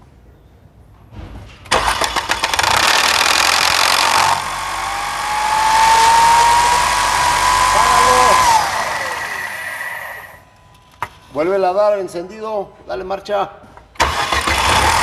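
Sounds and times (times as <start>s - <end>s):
engine starter cranking: 1.7s - 10.3s, 14.0s - 15.0s
engine running with rising whine: 4.0s - 10.4s.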